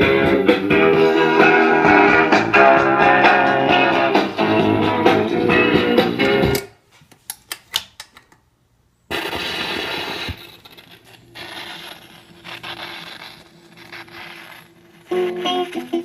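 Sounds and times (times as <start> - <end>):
recorded music: 0.0 - 6.8, 9.1 - 10.5, 11.3 - 16.0
stylus crackling hiss: 9.1 - 16.0.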